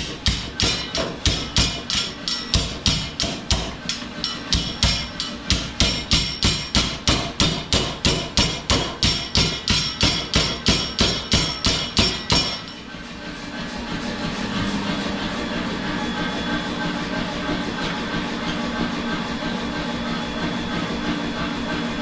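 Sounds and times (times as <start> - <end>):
power hammer striking hot steel: 0.0 - 12.9
motor humming: 13.8 - 20.6.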